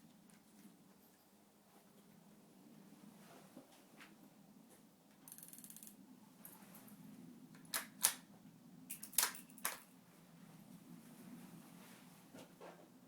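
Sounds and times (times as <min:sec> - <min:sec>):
fine ratcheting clicks: 0:05.3 - 0:06.0.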